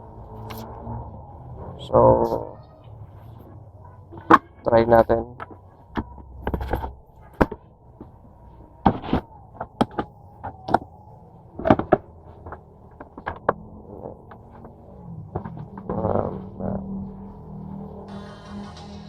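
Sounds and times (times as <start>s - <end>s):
plastic parts clicking and knocking: 4.1s - 8.2s, 8.8s - 16.2s.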